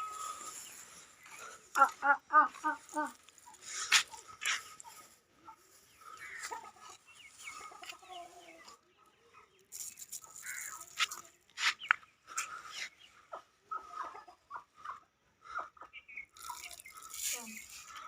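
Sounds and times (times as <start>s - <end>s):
chickens clucking softly: 1.8s - 17.0s.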